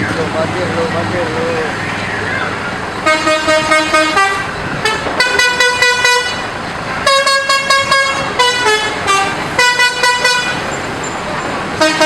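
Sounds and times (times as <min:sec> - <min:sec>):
musical air horn playing a tune: 0:03.0 - 0:06.4, 0:07.0 - 0:10.7, 0:11.8 - 0:12.0.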